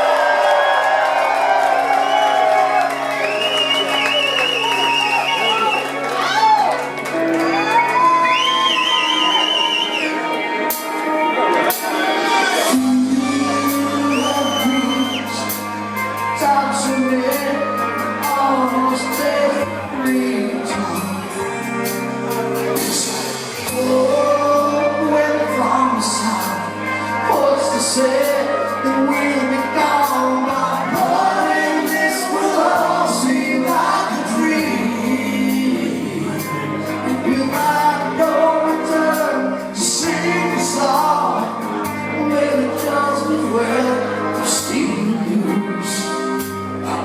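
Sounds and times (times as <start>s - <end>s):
live heavy rock band: 0.0s - 47.0s
man singing lead vocal: 11.6s - 22.0s, 22.7s - 47.0s.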